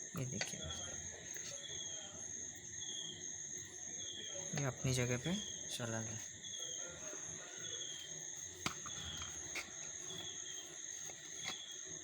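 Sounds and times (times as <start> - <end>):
insect chirping: 0.0 - 12.0.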